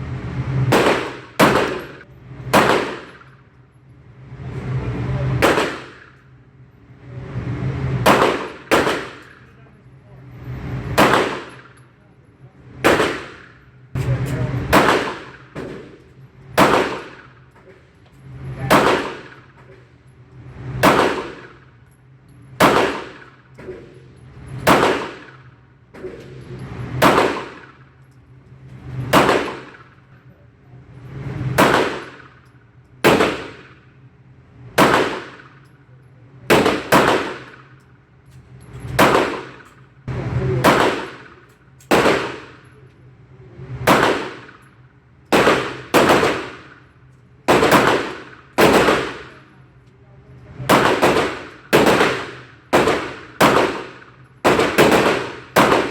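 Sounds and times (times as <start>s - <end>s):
pistol shots: 0.7s - 3.4s, 5.4s - 6.3s, 8.0s - 9.5s, 10.9s - 11.8s, 12.8s - 16.0s, 16.6s - 17.6s, 18.7s - 19.7s, 20.8s - 21.8s, 22.6s - 24.0s, 24.6s - 28.0s, 29.1s - 30.1s, 31.4s - 33.9s, 34.8s - 35.8s, 36.5s - 37.9s, 38.9s - 39.8s, 40.5s - 42.8s, 43.8s - 49.6s, 50.6s - 55.9s.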